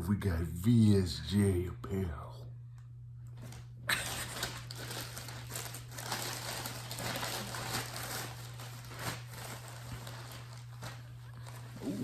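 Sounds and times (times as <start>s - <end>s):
low electrical hum: 0.0s - 12.0s
packaging crinkling and rustling: 3.4s - 12.0s.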